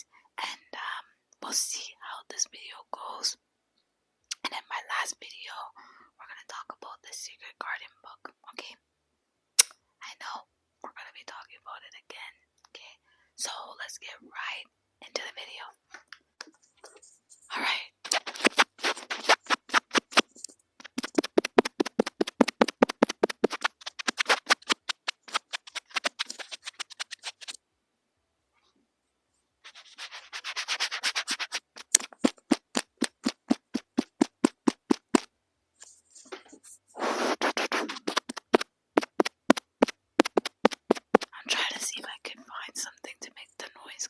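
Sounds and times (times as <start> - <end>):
scratching on a microphone: 16.4 - 27.6, 29.6 - 42.1.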